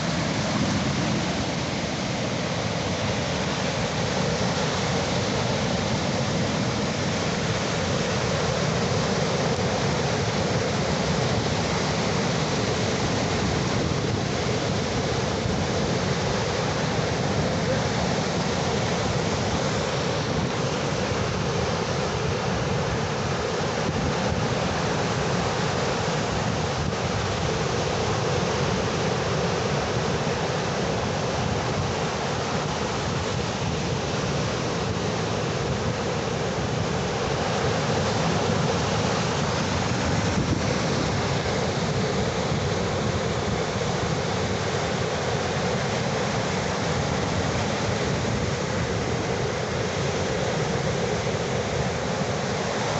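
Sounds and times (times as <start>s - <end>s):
ocean waves washing: 0.0s - 52.9s.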